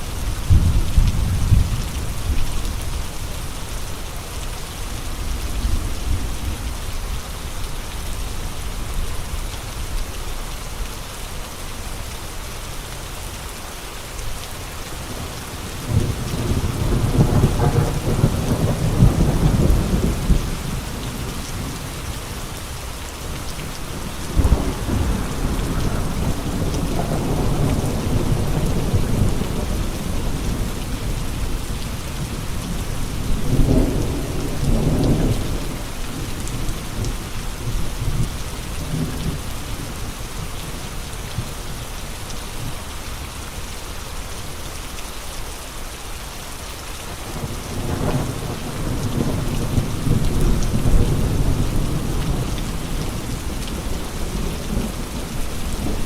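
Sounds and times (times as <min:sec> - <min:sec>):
steady rain falling: 0:00.0 - 0:56.0
low thunder rumbles: 0:00.2 - 0:03.5, 0:14.9 - 0:41.6, 0:47.2 - 0:56.0.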